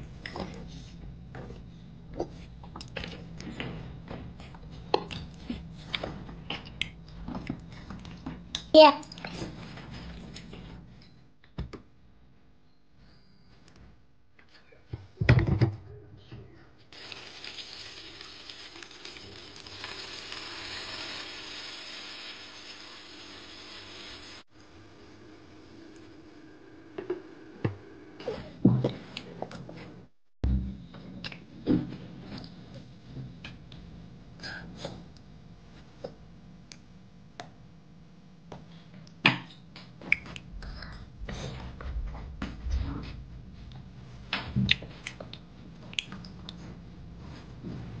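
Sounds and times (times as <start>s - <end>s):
steady hiss with crackles: 17.0s - 24.5s
low steady hum: 24.6s - 48.0s.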